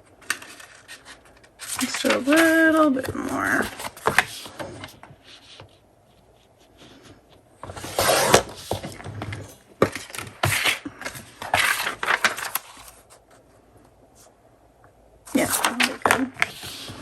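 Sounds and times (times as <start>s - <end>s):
paper handling clicks: 9.8s - 13.2s.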